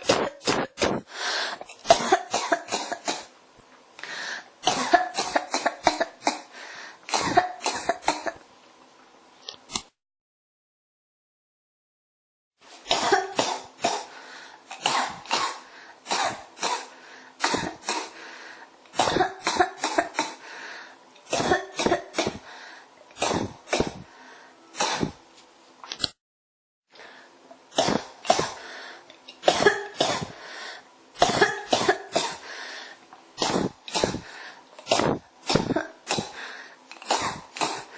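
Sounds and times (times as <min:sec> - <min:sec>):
person coughing: 0:00.0 - 0:03.3, 0:04.6 - 0:06.5, 0:07.1 - 0:08.4, 0:12.9 - 0:14.1, 0:14.7 - 0:18.2, 0:19.0 - 0:20.4, 0:21.3 - 0:22.4, 0:23.2 - 0:24.0, 0:24.8 - 0:25.2, 0:27.8 - 0:28.6, 0:29.4 - 0:30.4, 0:31.2 - 0:32.4, 0:33.4 - 0:37.9.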